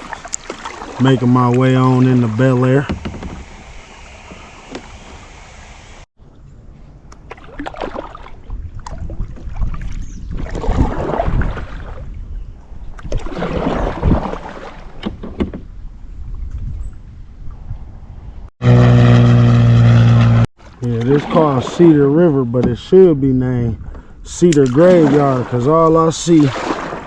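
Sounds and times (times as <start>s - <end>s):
paddle splashing water: 0.0s - 6.0s, 7.2s - 12.1s, 12.9s - 15.7s, 18.7s - 22.0s, 24.3s - 27.0s.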